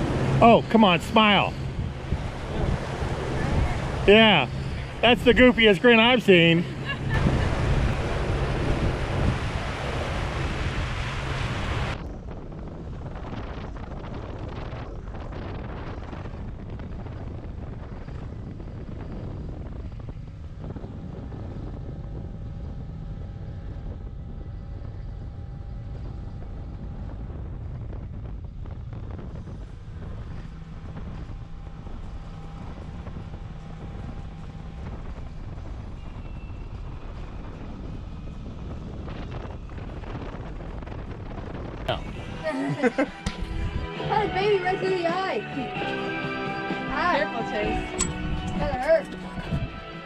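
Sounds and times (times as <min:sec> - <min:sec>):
boat motor drone: 0:00.0 - 0:50.0
wind buffeting microphone: 0:00.0 - 0:50.0.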